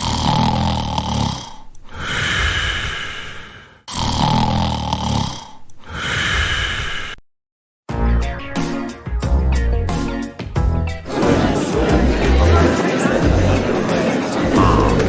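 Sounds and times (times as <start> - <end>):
person snoring with whistling: 0.0 - 2.8, 3.9 - 6.7.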